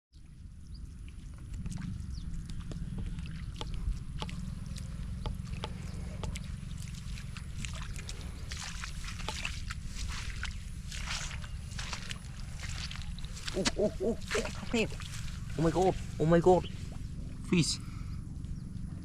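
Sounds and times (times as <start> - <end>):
water splashing and sloshing: 0.2 - 18.0
low rumble: 0.2 - 19.0
small clicks and drips: 0.8 - 13.6.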